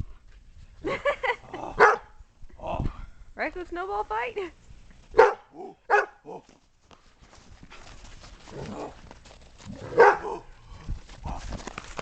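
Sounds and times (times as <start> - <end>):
dog barking: 1.8 - 2.1, 5.2 - 6.2, 9.9 - 10.4.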